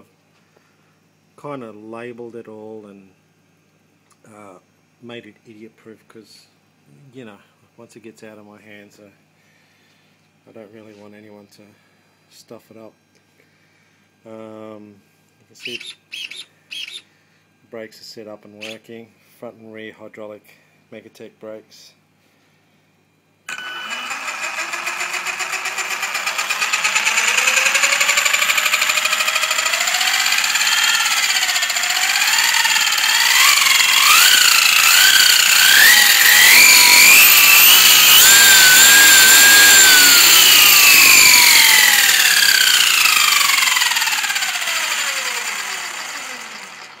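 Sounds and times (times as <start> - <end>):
electric motor whine: 23.5 - 47.0.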